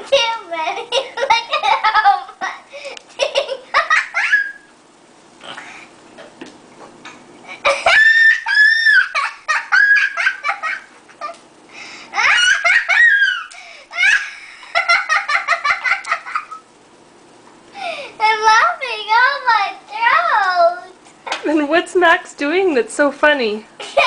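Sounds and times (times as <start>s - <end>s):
child giggling: 0.6s - 4.7s, 7.5s - 11.4s, 12.1s - 16.6s, 23.8s - 24.0s.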